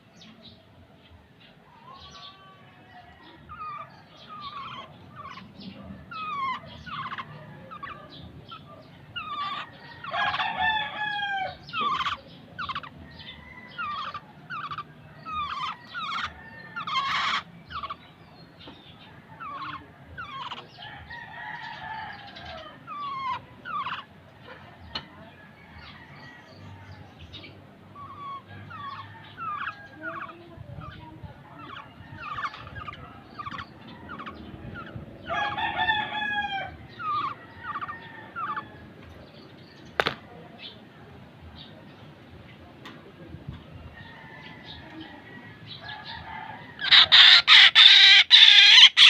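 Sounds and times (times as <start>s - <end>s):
oriole calling: 1.7s - 18.0s, 28.0s - 38.8s, 46.1s - 49.0s
rooster crowing: 9.3s - 11.7s, 35.2s - 38.8s, 44.0s - 49.0s.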